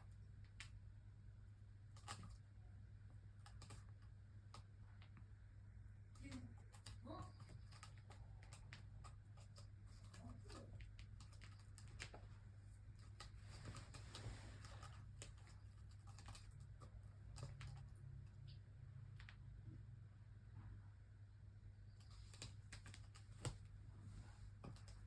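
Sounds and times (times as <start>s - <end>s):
light clicks and taps: 3.2s - 5.3s, 6.1s - 19.8s, 21.9s - 23.8s, 24.5s - 25.0s.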